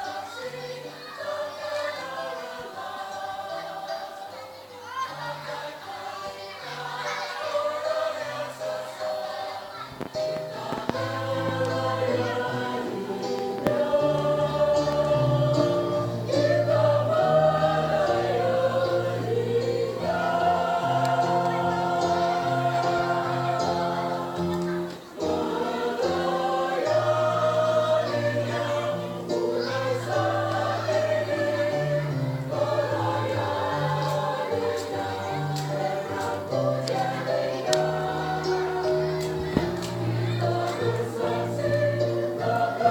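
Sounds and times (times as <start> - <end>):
choir singing a hymn: 0.0 - 42.9.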